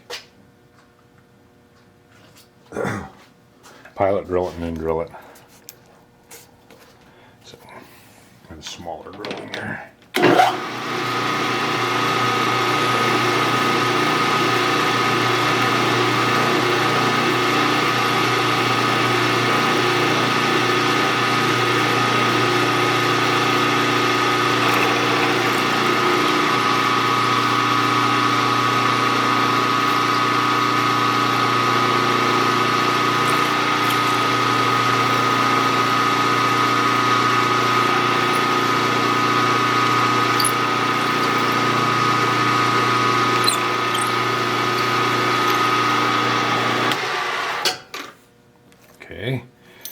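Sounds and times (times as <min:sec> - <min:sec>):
milling machine spindle whine: 0:10.9 - 0:47.6.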